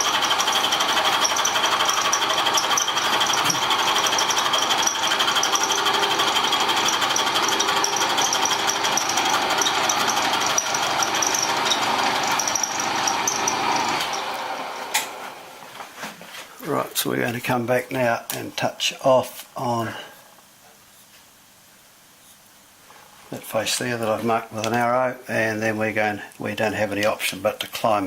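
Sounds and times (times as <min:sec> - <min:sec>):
milling machine cutting metal: 0:00.0 - 0:15.4.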